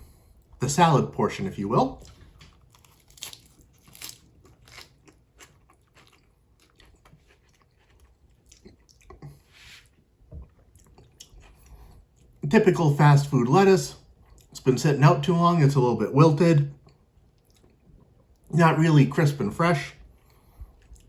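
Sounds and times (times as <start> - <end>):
man chewing lettuce: 1.8 - 12.4, 14.0 - 14.6, 16.8 - 18.5, 20.1 - 21.0.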